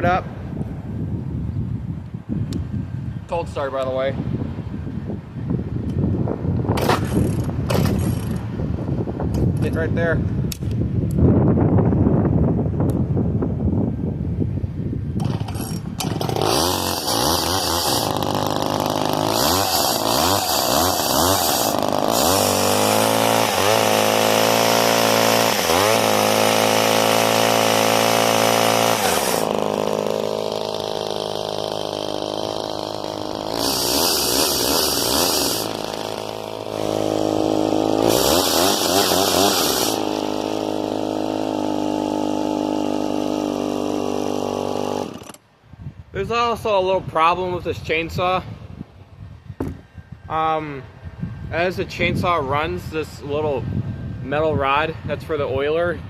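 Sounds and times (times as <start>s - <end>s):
chainsaw revving: 15.2s - 45.4s.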